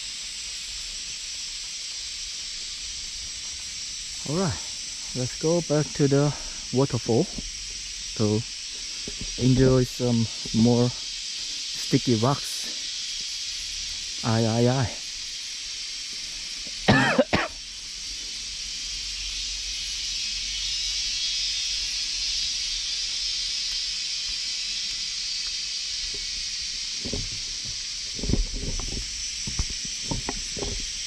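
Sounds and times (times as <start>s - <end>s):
high hiss of outdoor noise: 0.0s - 31.0s
short cough-like vocal sound: 16.8s - 17.6s.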